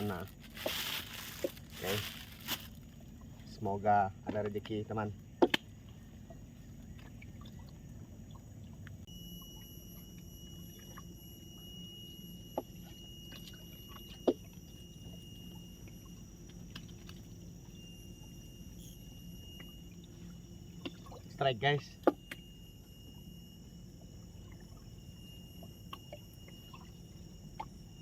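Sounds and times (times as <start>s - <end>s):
thin high tone: 0.0s - 2.8s, 9.0s - 28.0s
steady low rumble: 0.0s - 28.0s.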